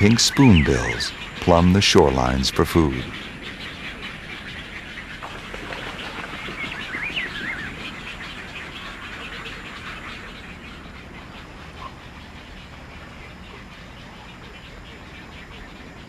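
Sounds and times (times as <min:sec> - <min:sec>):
chatter of many birds: 0:00.0 - 0:16.0.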